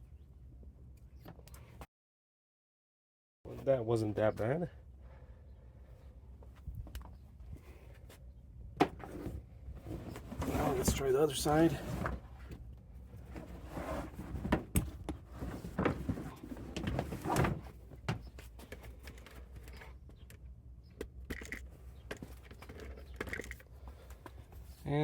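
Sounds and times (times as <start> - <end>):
rubber mat knocking and scraping: 13.3 - 19.4.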